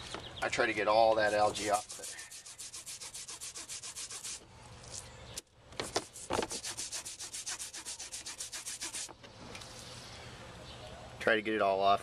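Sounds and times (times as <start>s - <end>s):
toothbrush scrubbing a screen: 1.1s - 4.4s, 6.0s - 9.1s.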